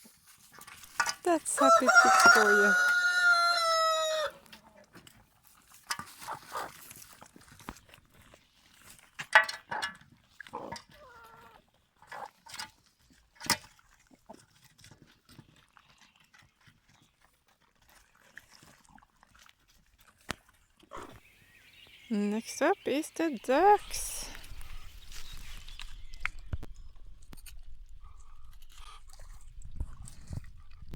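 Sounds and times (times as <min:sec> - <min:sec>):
chickens clucking: 0:01.3 - 0:04.4, 0:22.1 - 0:26.6.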